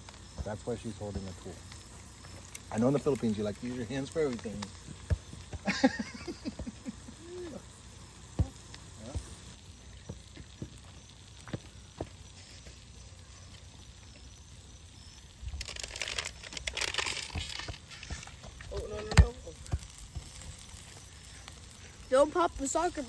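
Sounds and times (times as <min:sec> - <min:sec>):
crinkling rustle: 0:07.8 - 0:23.0.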